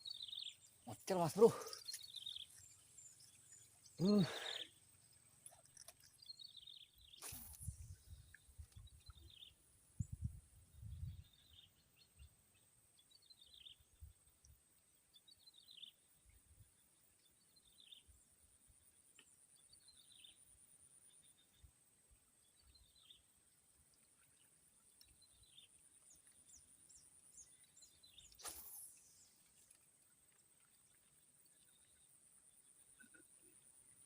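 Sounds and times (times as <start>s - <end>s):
bird chirping: 0.0s - 14.1s.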